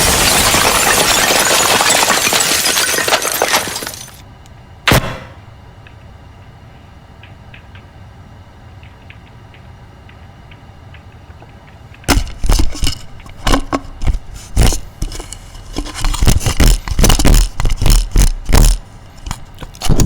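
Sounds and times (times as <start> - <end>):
loud cracks and crashes: 0.0 - 4.2, 12.1 - 20.0
low hum with faint ticks: 4.2 - 4.8, 5.5 - 20.0.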